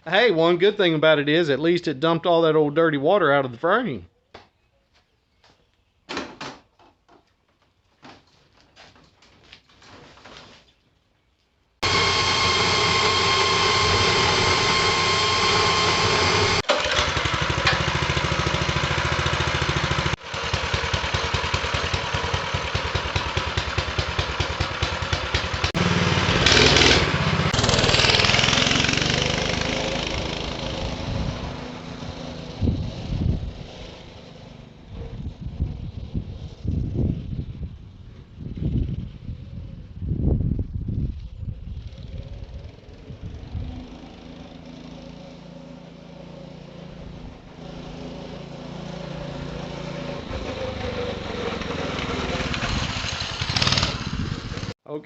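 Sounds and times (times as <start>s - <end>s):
mini bike engine running: 11.8s - 37.6s, 41.7s - 54.7s.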